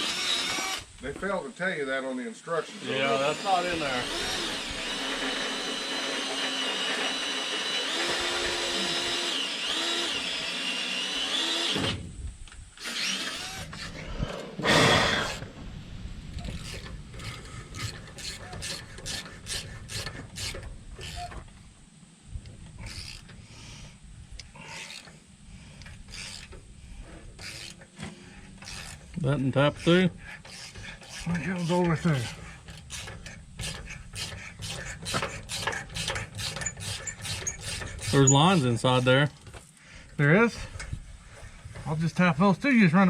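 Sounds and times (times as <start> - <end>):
power drill running: 0.0 - 1.0, 2.7 - 12.0, 12.8 - 14.0
hand tools clicking on bolts: 16.4 - 21.5, 25.8 - 26.6, 27.4 - 39.7.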